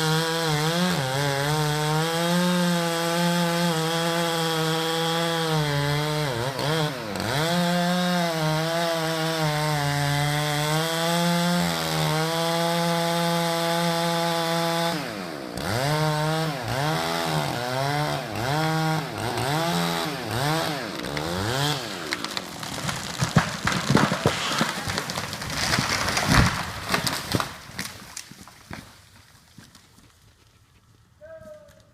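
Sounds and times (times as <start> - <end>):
chainsaw cutting: 0.0 - 29.0
wood cracking and snapping: 20.6 - 30.2.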